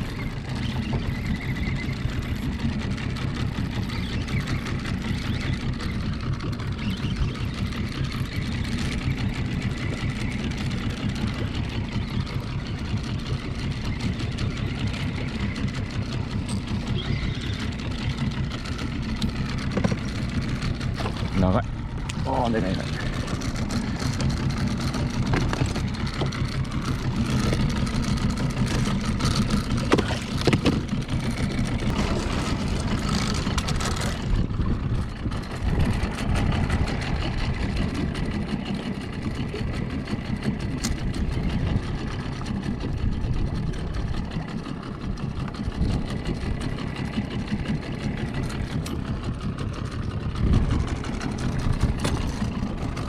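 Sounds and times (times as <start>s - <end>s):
outboard motor idling: 0.0s - 53.0s.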